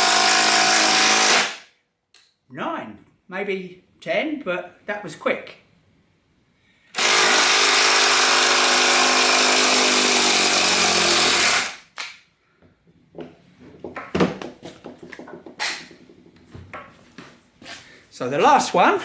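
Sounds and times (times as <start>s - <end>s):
handling clicks and knocks: 12.8s - 17.2s.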